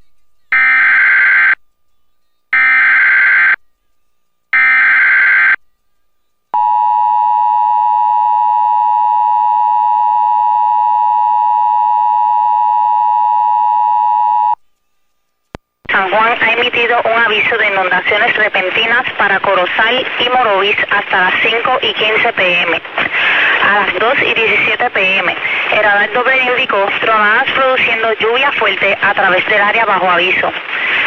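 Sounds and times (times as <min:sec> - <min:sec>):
steady attention tone: 0:00.0 - 0:30.1.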